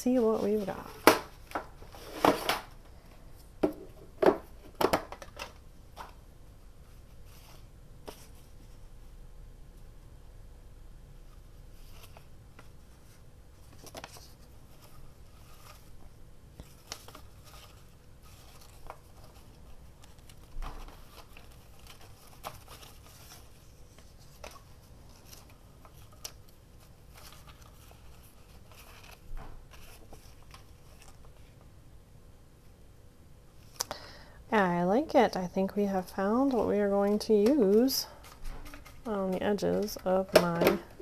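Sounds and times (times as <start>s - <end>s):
paper rustling: 11.7s - 31.6s, 35.9s - 41.0s.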